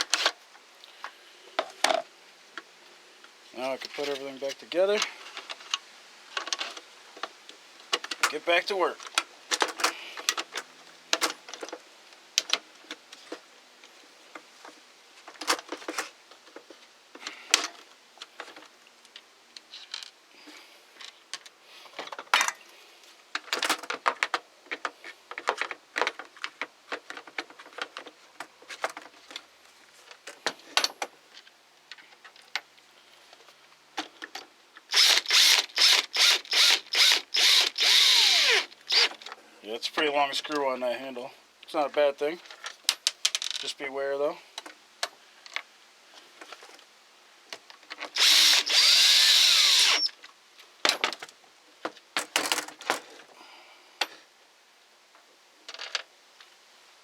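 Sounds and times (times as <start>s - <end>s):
plastic parts clicking and knocking: 23.4s - 29.4s
cordless driver pulses: 35.0s - 39.1s, 48.2s - 50.1s.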